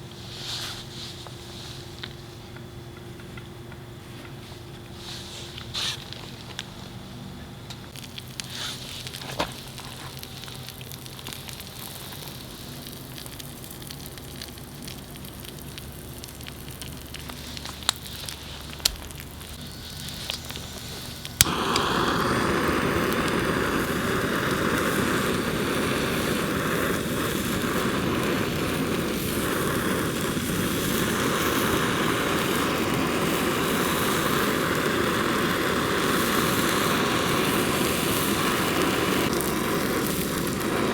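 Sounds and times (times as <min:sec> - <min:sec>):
gas burner flame hissing: 0:00.0 - 0:40.9
gas burner ignition click: 0:20.1 - 0:37.1.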